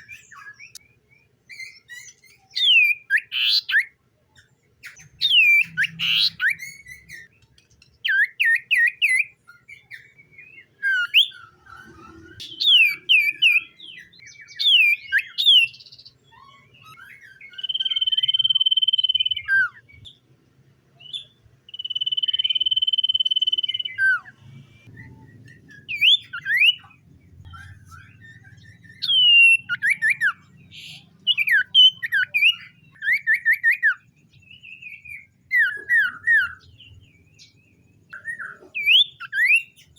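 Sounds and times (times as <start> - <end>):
bird chirps and trills: 0.0 - 20.3, 20.9 - 39.9
bird whistled notes: 16.9 - 20.0, 21.1 - 36.8.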